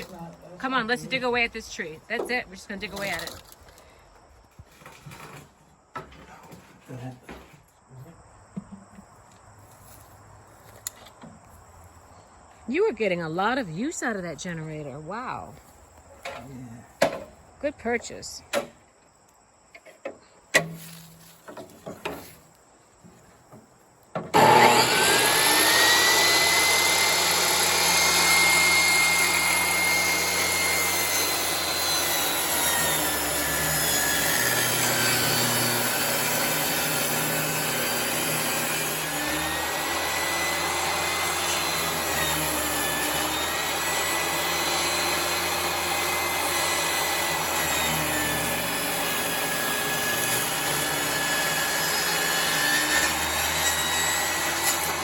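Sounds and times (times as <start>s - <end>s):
power saw ripping a board: 2.2s - 3.6s, 4.7s - 6.8s, 24.2s - 55.0s.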